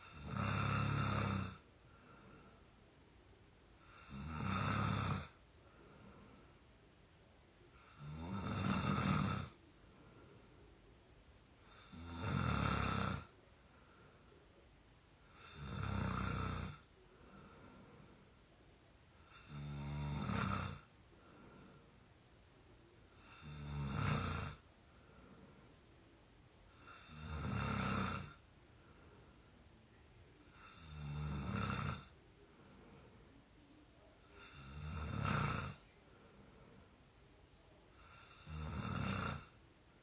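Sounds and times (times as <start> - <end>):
person snoring: 0.0 - 2.5, 3.8 - 5.4, 7.8 - 9.6, 11.6 - 13.3, 15.3 - 18.2, 19.2 - 21.8, 23.1 - 24.6, 26.7 - 28.4, 30.4 - 33.1, 34.2 - 35.8, 38.0 - 39.6
quiet breathing: 0.0 - 40.0.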